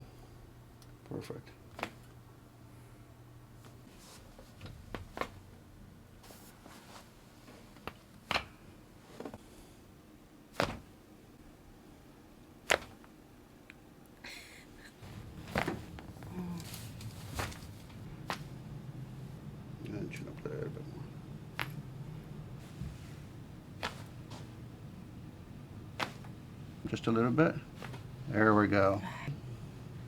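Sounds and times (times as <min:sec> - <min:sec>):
chiropractic adjustment cracks: 0:01.7 - 0:02.1, 0:07.8 - 0:08.6, 0:10.6 - 0:10.9, 0:12.6 - 0:13.1, 0:21.6 - 0:21.8, 0:23.7 - 0:24.5, 0:25.9 - 0:26.4, 0:27.7 - 0:28.1.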